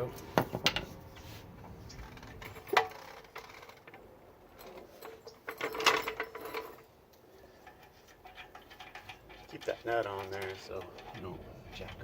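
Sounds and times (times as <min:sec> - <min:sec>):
metal clanks and clicks: 0:04.6 - 0:06.9, 0:07.6 - 0:12.0.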